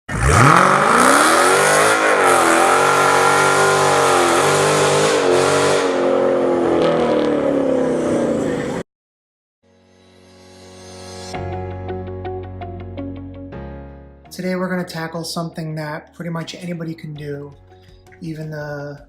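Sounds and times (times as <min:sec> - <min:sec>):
car engine revving: 0:00.1 - 0:08.8.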